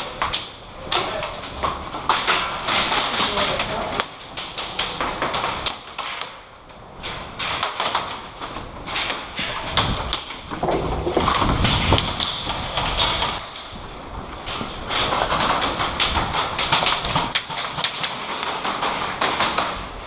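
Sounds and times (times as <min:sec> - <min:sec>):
footsteps: 0:10.4 - 0:12.7.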